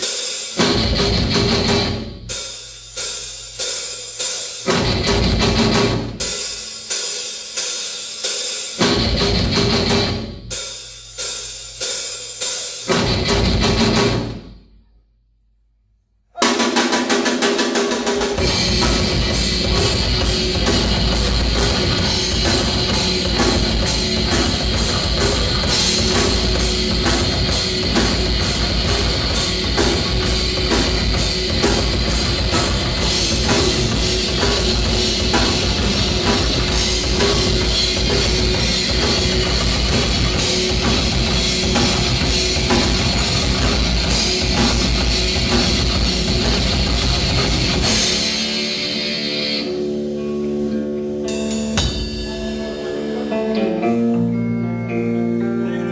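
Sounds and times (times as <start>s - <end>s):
heavy metal music: 0.0s - 2.3s, 4.6s - 6.7s, 8.8s - 10.6s, 18.3s - 55.9s.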